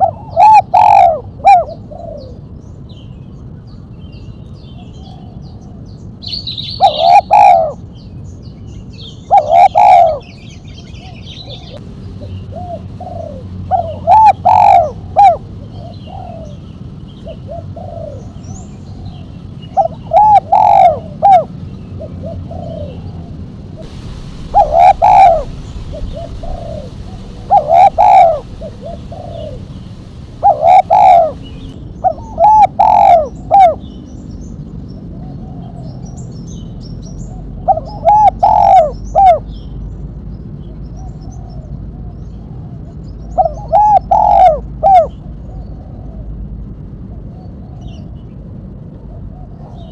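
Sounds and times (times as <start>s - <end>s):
dove cooing: 0.0s - 2.4s, 6.8s - 7.8s, 9.3s - 10.3s, 12.6s - 16.6s, 19.8s - 21.5s, 23.8s - 33.8s, 37.7s - 39.4s, 43.6s - 45.2s.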